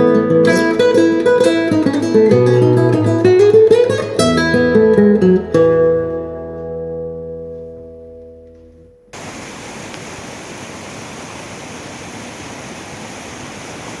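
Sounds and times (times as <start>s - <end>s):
running water rushing: 9.2s - 14.0s.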